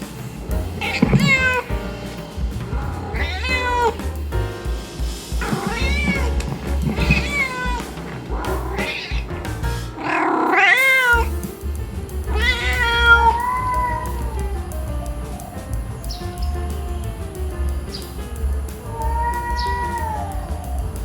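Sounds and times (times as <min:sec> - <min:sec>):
background music: 0:00.0 - 0:21.0
cat meowing: 0:00.8 - 0:01.7, 0:02.7 - 0:04.0, 0:05.4 - 0:09.4, 0:10.0 - 0:11.3, 0:12.3 - 0:14.7, 0:15.4 - 0:17.3, 0:18.8 - 0:21.0.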